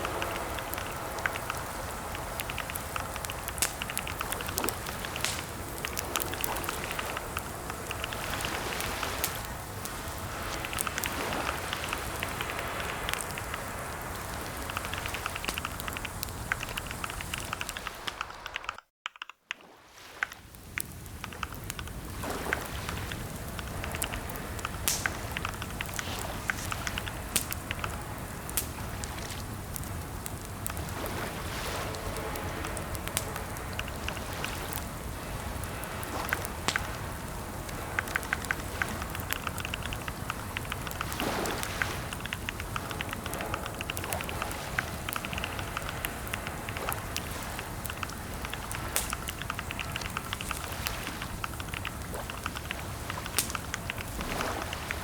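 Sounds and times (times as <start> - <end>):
steady hiss: 0.0 - 18.8, 20.4 - 55.0
keyboard typing clicks: 14.2 - 28.0.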